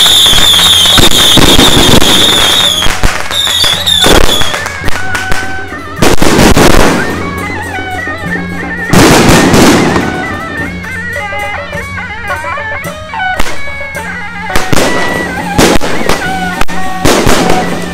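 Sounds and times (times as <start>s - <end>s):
fireworks bursting and crackling: 0.0s - 17.9s
music with wavering melody: 3.9s - 17.9s.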